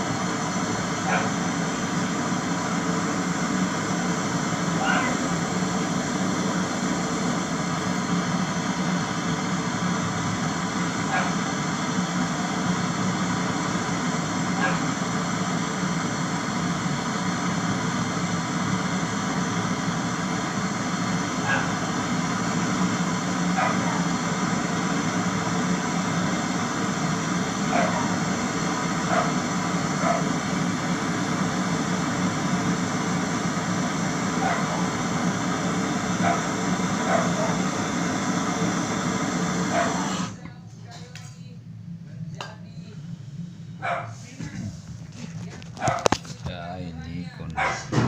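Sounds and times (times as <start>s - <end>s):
machine hum and hiss: 0.0s - 41.5s
dog barking faintly: 36.2s - 37.6s, 45.7s - 46.1s, 47.5s - 48.0s.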